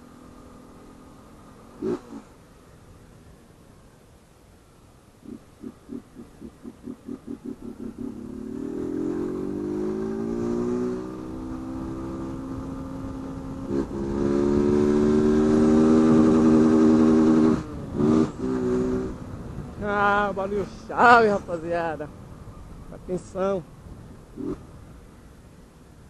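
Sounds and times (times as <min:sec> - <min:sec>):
motorcycle engine revving: 0:00.0 - 0:02.4, 0:05.2 - 0:19.4, 0:24.4 - 0:24.7.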